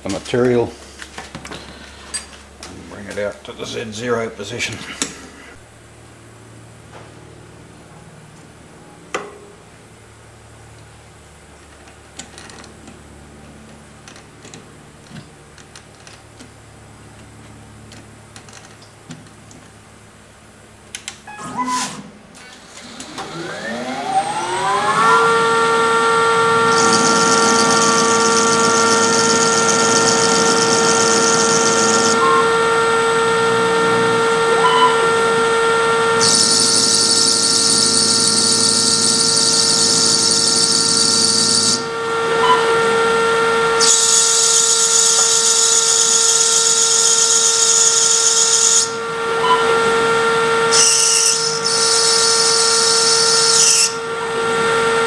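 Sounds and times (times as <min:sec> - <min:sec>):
hissing metal cutting noise: 0:21.3 - 0:55.0
lathe spindle whine: 0:21.3 - 0:55.0.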